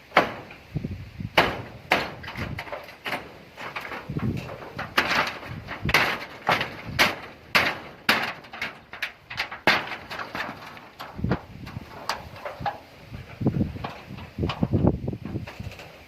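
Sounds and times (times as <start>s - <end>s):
sharp knocks: 0.1s - 0.6s, 1.4s - 12.8s.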